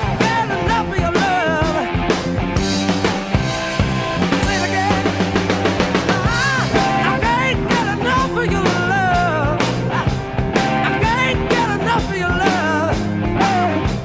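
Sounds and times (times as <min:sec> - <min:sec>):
rock music recording: 0:00.0 - 0:14.0.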